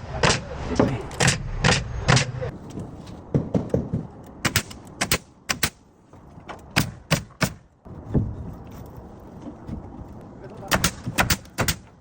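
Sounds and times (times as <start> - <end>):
hammer striking nails into wood: 10.7 - 11.9.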